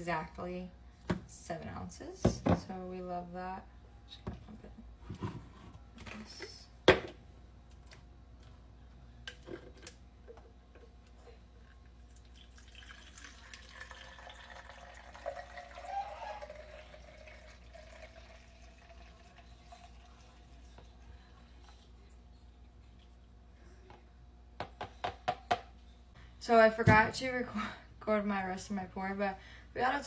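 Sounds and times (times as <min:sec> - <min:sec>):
milk trickling into a cup: 0:12.0 - 0:22.1.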